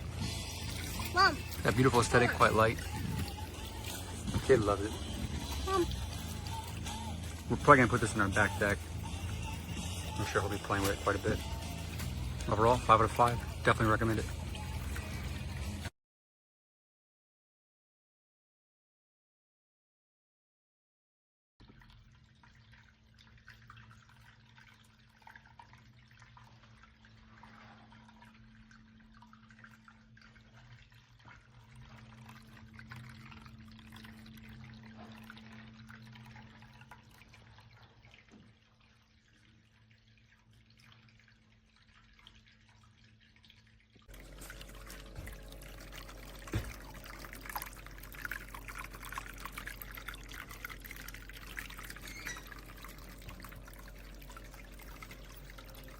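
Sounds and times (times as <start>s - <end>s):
fountain water trickling: 0.0s - 15.9s, 21.6s - 55.9s
pump humming: 0.0s - 15.9s, 23.4s - 40.2s, 44.0s - 55.9s
water splashing: 0.0s - 15.9s, 21.6s - 55.9s.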